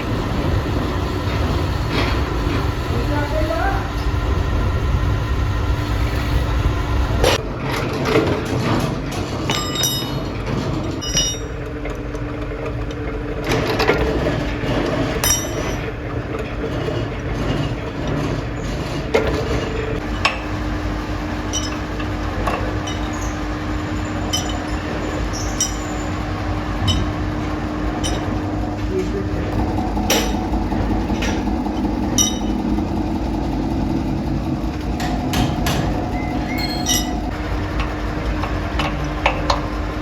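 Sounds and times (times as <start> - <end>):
factory machinery humming: 0.0 - 40.0
steel parts clinking on metal: 9.5 - 11.6, 15.2 - 15.9, 21.4 - 26.2, 28.0 - 28.4, 36.2 - 37.3.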